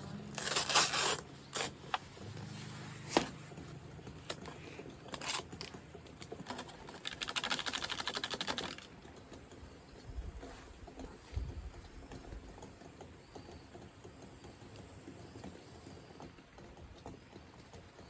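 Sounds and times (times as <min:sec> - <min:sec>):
packaging crackling: 0:00.0 - 0:08.9
packaging clicks and knocks: 0:03.1 - 0:08.8.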